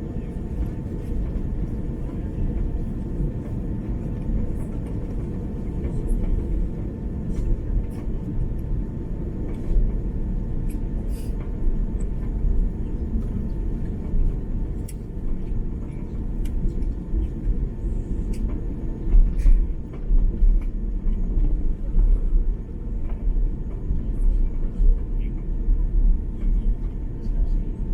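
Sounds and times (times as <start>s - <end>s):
aircraft engines idling rumble: 0.0s - 27.9s.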